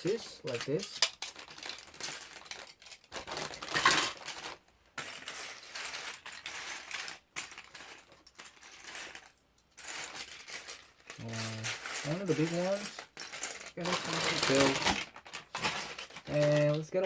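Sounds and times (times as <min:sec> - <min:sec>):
plastic pieces clattering: 0:00.0 - 0:17.0.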